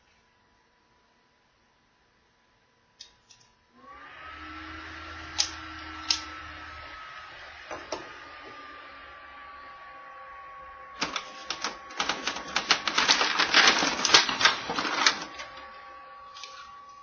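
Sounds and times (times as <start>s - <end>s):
toy battery motor whining: 11.0s - 17.0s.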